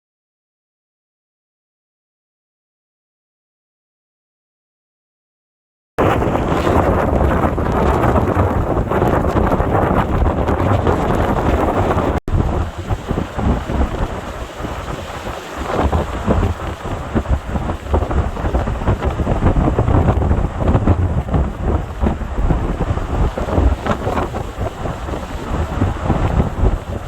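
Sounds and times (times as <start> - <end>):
wind gusting on microphone: 6.0 - 27.0
rain: 12.4 - 27.0.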